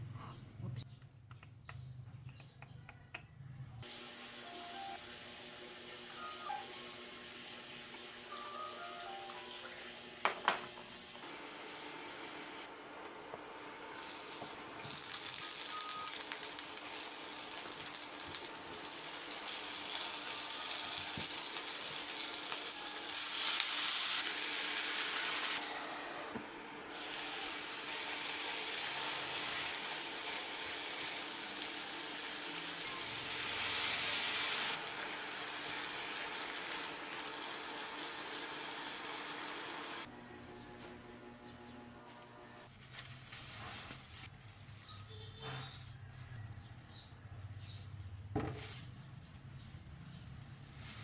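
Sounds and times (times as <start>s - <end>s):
food sizzling in oil: 3.8s - 12.7s, 13.6s - 40.1s.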